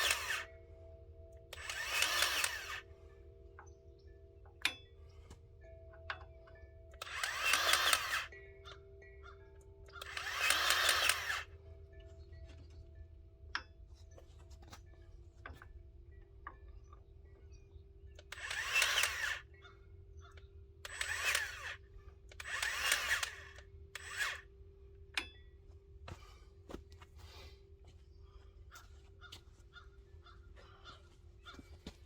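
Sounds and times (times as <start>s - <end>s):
grease gun motor bursts: 0.0s - 0.5s, 1.5s - 3.0s, 7.0s - 8.4s, 10.0s - 11.6s, 18.2s - 19.5s, 20.8s - 24.5s.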